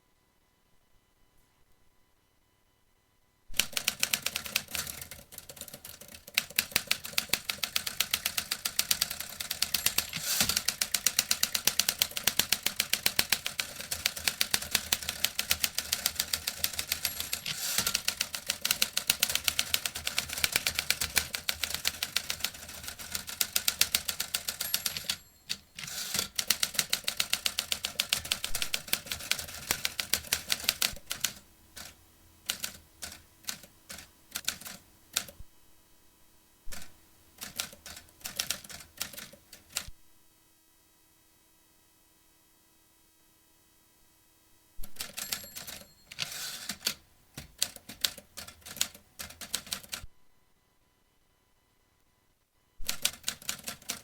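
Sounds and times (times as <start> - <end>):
typewriter key strikes: 6.3 - 31.3.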